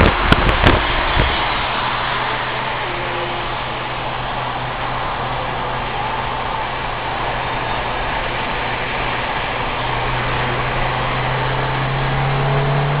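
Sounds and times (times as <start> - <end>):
car engine hum: 0.0 - 13.0
road noise: 0.0 - 13.0.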